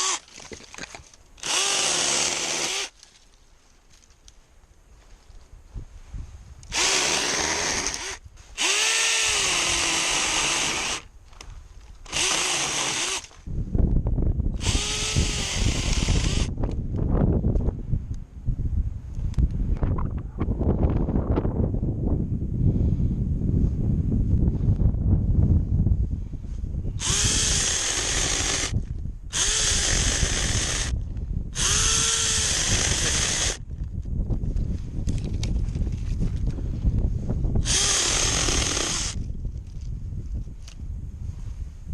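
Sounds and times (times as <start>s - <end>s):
electric chainsaw motor whining: 0.0s - 0.3s, 1.4s - 3.0s, 6.7s - 11.1s, 12.0s - 13.4s, 14.6s - 16.6s, 27.0s - 31.0s, 31.6s - 33.6s, 37.6s - 39.2s
wood crackling as cut: 0.0s - 3.2s, 6.7s - 13.4s, 27.0s - 28.8s, 29.4s - 30.9s, 31.6s - 33.6s, 37.6s - 39.2s.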